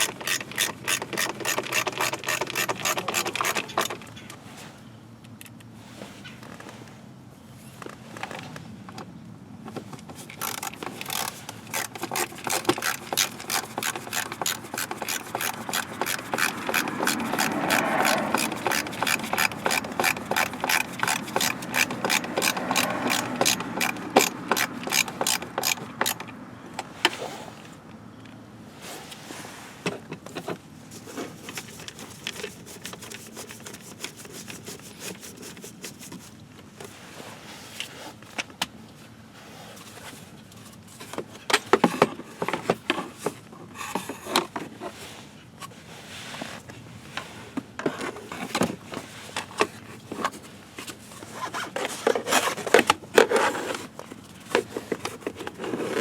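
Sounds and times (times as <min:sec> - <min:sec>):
ratchet wrench clicking: 0:00.0 - 0:04.0, 0:10.3 - 0:26.3
rubbing: 0:10.4 - 0:26.1.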